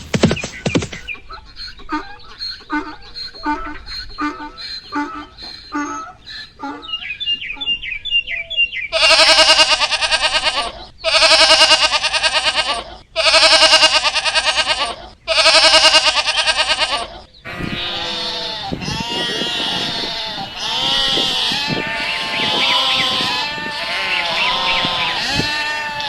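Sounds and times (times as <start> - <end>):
animals bleating: 1.9 - 7.7, 8.9 - 26.0
flock bleating: 8.9 - 26.0.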